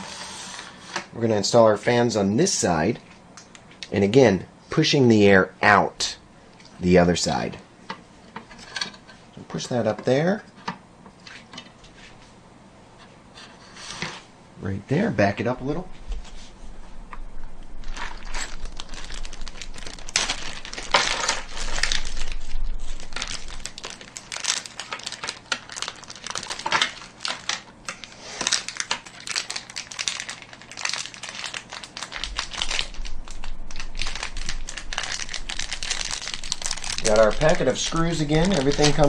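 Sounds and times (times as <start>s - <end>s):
plastic packet rustling: 17.8s - 39.0s.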